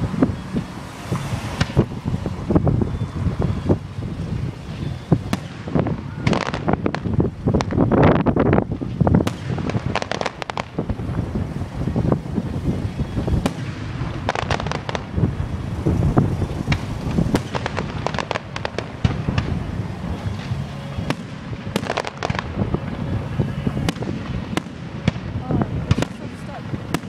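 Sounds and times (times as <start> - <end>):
fireworks booming: 0.0 - 27.0
fireworks cracking and crackling: 0.0 - 27.0.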